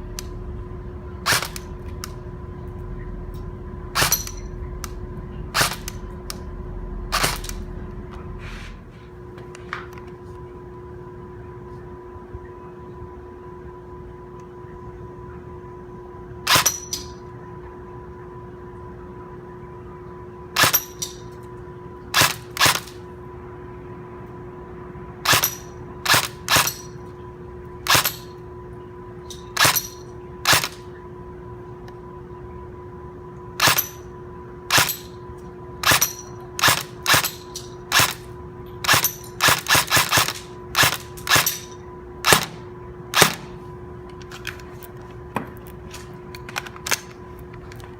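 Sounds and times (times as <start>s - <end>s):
steady low hum: 0.0s - 47.9s
airsoft gun shots: 42.3s - 42.6s, 43.2s - 43.6s.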